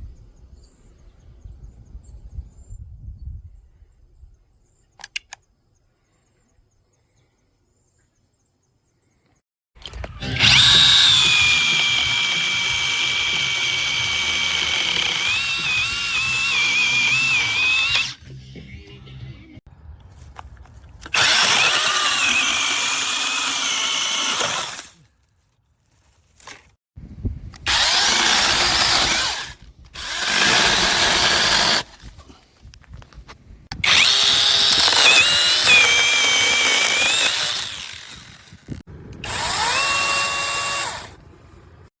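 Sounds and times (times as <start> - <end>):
mini chainsaw cutting wood: 9.8 - 18.2, 21.1 - 25.0, 27.6 - 32.1, 33.8 - 41.2.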